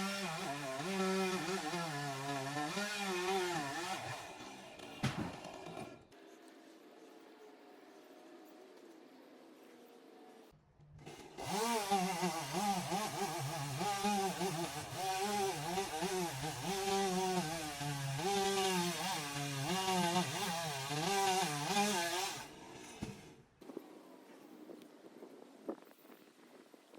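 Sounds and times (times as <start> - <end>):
chainsaw running hard: 0.0 - 4.8, 11.0 - 22.9.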